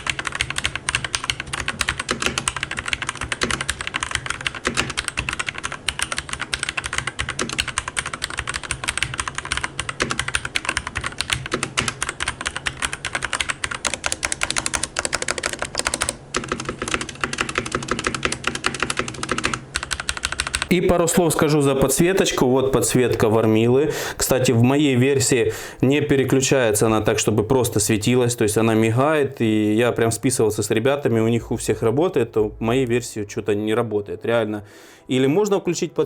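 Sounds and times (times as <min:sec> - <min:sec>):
fast typing on mechanical keyboard: 0:00.0 - 0:20.7.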